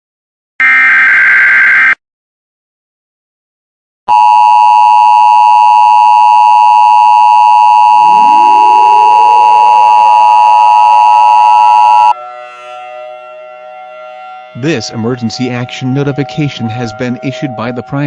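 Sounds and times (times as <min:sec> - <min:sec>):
siren winding up: 0:00.6 - 0:02.0, 0:04.1 - 0:12.2
electronic two-tone beep: 0:04.1 - 0:12.2.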